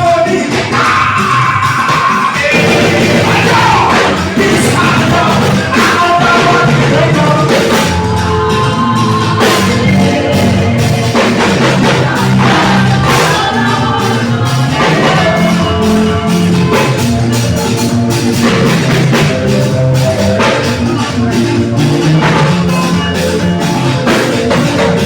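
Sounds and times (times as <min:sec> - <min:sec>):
person singing: 0:00.0 - 0:17.8
drum kit: 0:00.0 - 0:25.0
live band playing: 0:00.0 - 0:25.0
low bass line: 0:02.6 - 0:25.0.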